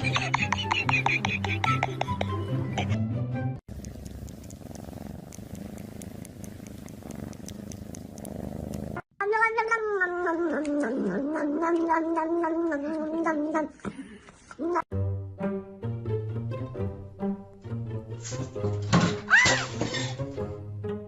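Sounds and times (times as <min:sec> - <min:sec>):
cat purring: 0:03.7 - 0:09.1.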